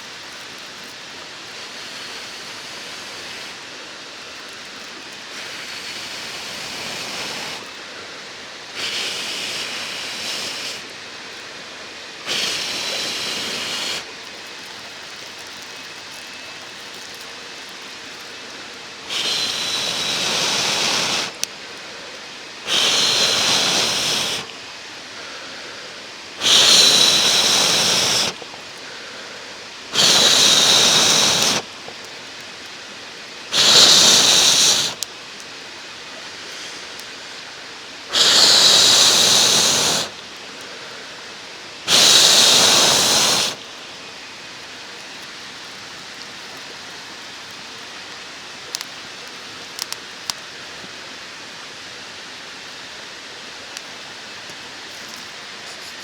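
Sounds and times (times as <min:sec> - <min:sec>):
mountain stream running: 0:00.0 - 0:56.0
person blowing long breaths: 0:25.1 - 0:31.7, 0:33.5 - 0:35.0, 0:38.1 - 0:43.6.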